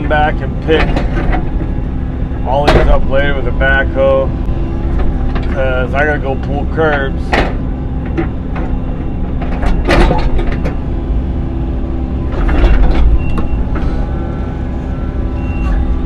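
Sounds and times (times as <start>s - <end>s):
excavator engine running: 0.0s - 16.0s
clanks and knocks: 0.2s - 3.4s, 4.4s - 11.0s, 12.2s - 14.1s.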